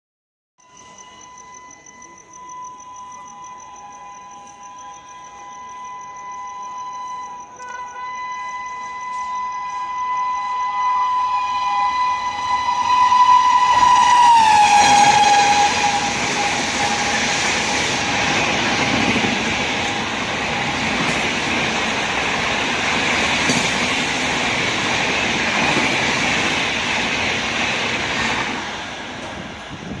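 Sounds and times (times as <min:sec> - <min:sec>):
train coaches rushing past: 0:00.7 - 0:30.0
locomotive horn chord: 0:07.6 - 0:18.2.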